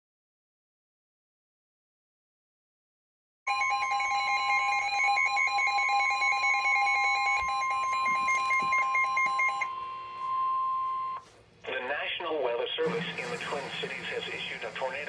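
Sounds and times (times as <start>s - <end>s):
radio alarm beeping rapidly: 3.5s - 11.2s
steady warning alarm tone: 3.5s - 11.3s.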